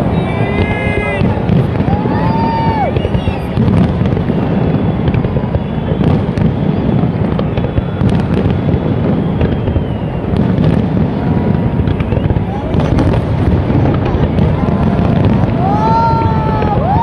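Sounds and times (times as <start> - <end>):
fireworks booming: 0.0 - 17.0
sharp firework cracks: 0.0 - 17.0.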